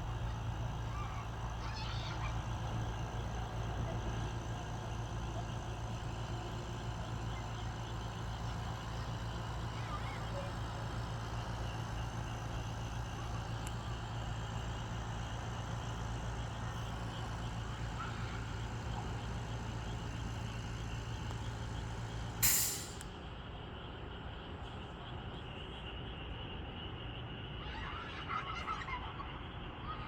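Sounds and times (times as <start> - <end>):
engine humming: 0.0 - 23.1
loud hiss: 22.4 - 23.0.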